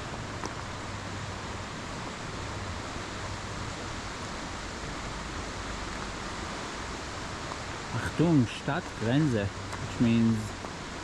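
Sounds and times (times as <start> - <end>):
mountain river rushing: 0.0 - 11.0.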